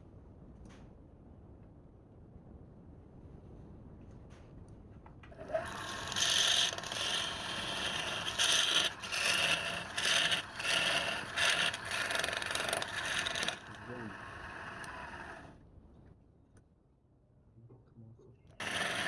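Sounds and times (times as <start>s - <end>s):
hand tool scraping wood: 5.4s - 15.4s, 18.6s - 19.0s.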